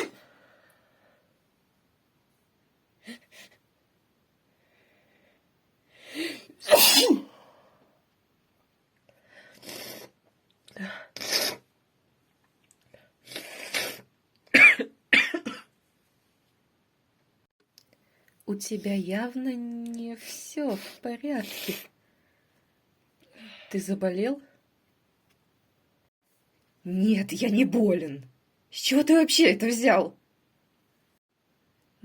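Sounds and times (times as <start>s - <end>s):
woman sneezing: 0.0s - 0.2s, 6.6s - 7.4s.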